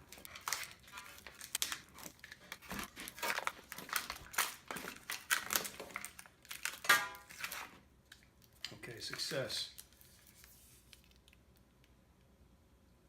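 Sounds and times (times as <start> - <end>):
battery crinkling and tearing: 0.0 - 11.6.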